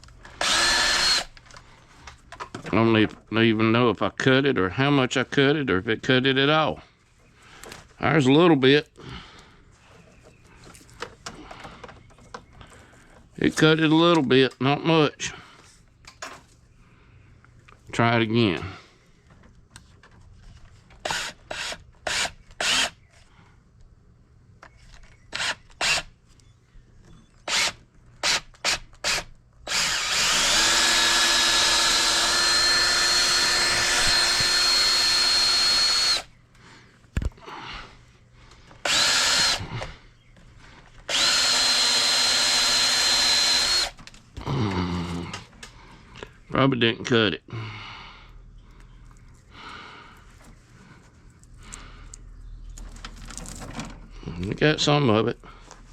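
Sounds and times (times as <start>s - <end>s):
power drill motor: 0.2s - 1.5s, 21.0s - 23.0s, 25.3s - 26.1s, 27.4s - 36.3s, 38.8s - 40.0s, 41.0s - 44.0s.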